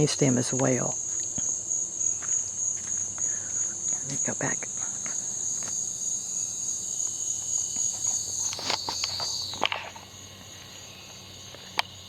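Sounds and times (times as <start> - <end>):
insects buzzing trill: 0.0 - 12.0
soft steps or rustles: 7.0 - 10.6.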